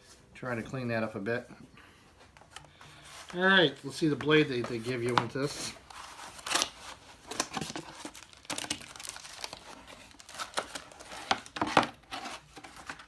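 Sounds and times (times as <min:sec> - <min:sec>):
packaging crinkling and tearing: 0:04.6 - 0:13.0.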